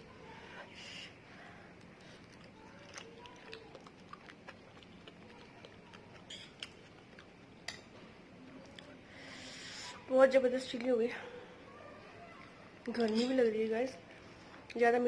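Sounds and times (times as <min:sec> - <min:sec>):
noodles being chewed: 0:01.8 - 0:07.8.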